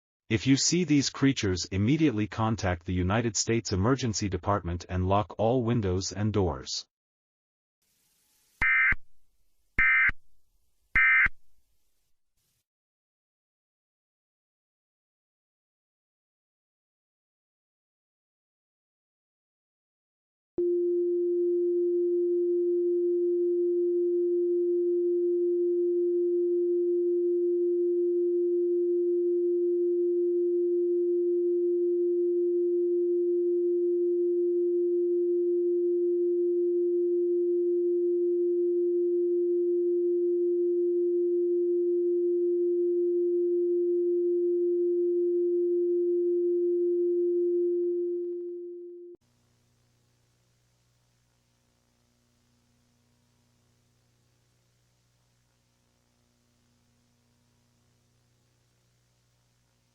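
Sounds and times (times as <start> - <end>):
faint higher tone: 20.6 - 49.2
steady electronic sine tone: 20.6 - 49.2.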